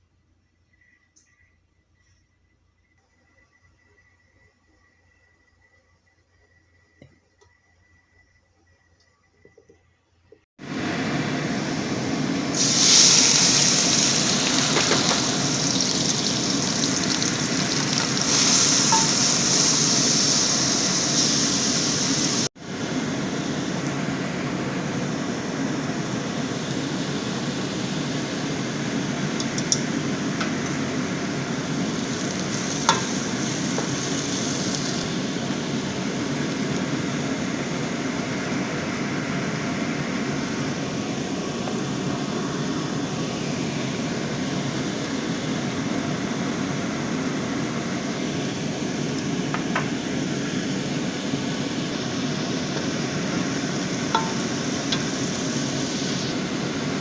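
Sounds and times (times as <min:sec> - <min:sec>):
food sizzling in a pan: 0:12.5 - 0:24.2, 0:24.8 - 0:40.7, 0:45.6 - 0:57.0.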